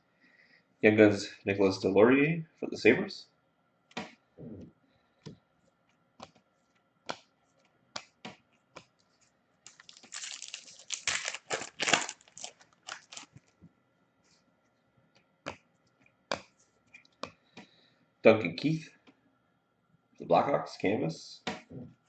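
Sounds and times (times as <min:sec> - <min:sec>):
card pack wrapper tearing: 0:09.7 - 0:13.4.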